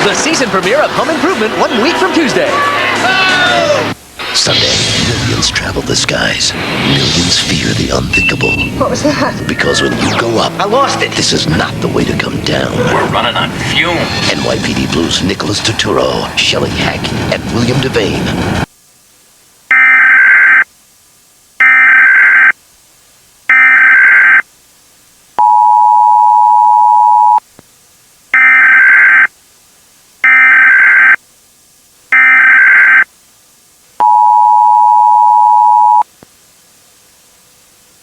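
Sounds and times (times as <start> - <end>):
two-tone attention signal: 19.7 - 20.6, 21.6 - 22.5, 23.5 - 24.4, 25.4 - 27.4, 28.4 - 29.3, 30.2 - 31.2, 32.1 - 33.0, 34.0 - 36.0
buzzy digital data bursts: 30.2 - 31.2, 32.1 - 33.0.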